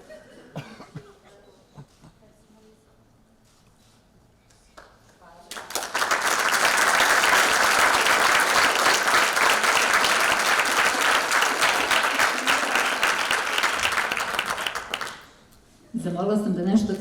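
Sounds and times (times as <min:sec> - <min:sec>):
audience applauding: 0:05.5 - 0:15.3.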